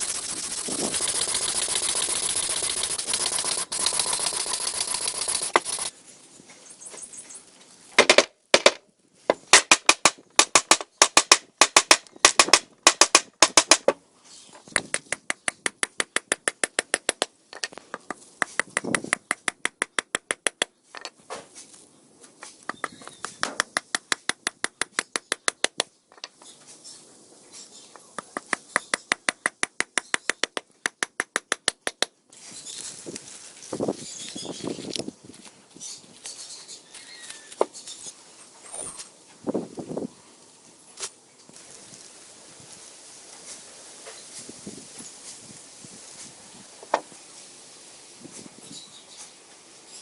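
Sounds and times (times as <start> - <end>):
sharp taps: 14.7 - 20.7, 28.0 - 32.1.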